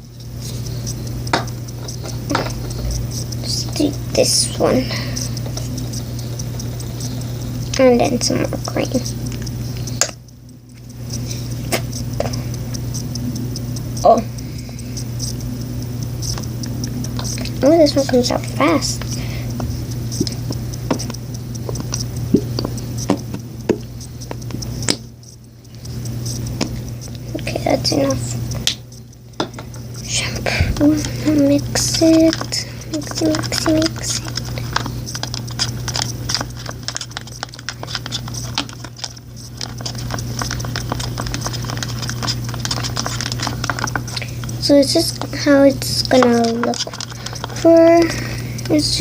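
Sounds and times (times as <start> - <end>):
steady low hum: 0.0 - 49.0
stirrer tapping container: 1.3 - 2.9, 17.2 - 25.0, 29.4 - 29.8, 30.7 - 49.0
sticky slime sounds: 17.1 - 25.0, 29.6 - 49.0
squeeze bottle clicks and squelches: 30.8 - 44.3, 46.1 - 48.8.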